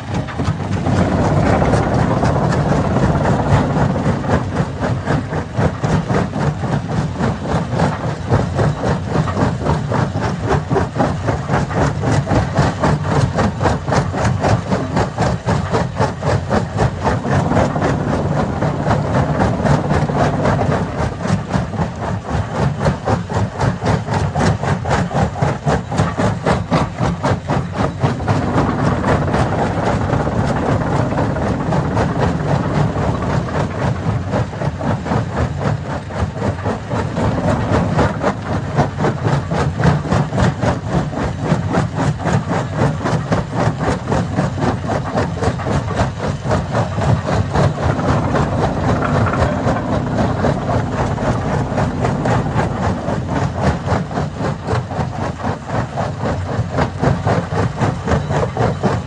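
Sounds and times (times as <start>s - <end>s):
stone crusher running: 0.0s - 22.8s, 42.5s - 59.0s.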